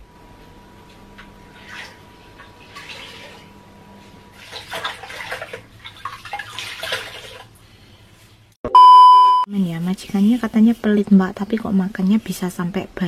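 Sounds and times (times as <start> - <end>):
water running and splashing: 4.3 - 7.5.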